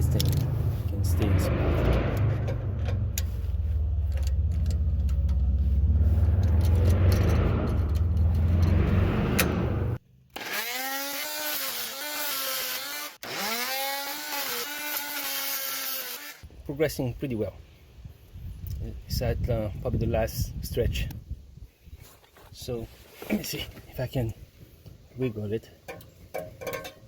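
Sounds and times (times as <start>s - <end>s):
power saw cutting metal bolt: 1.7s - 3.3s, 6.2s - 16.4s.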